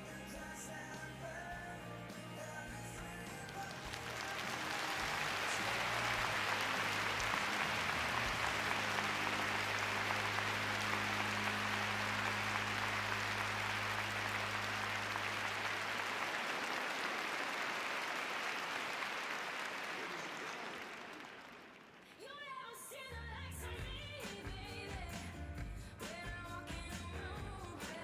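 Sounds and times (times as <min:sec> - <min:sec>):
audience applauding: 0:03.4 - 0:22.3.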